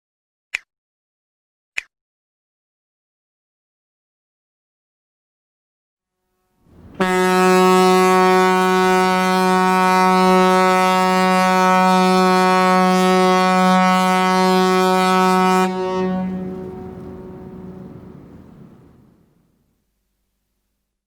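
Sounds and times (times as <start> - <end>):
ship's horn long low blast: 6.0 - 19.4.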